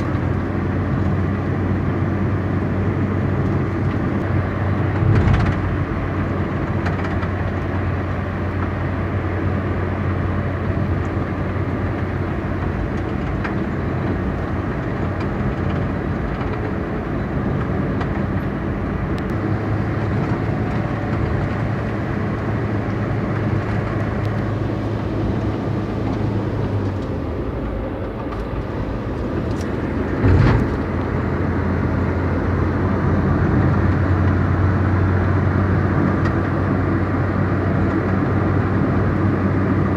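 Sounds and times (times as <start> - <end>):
car engine and road noise: 0.0 - 39.9
loud thump: 30.2 - 30.8.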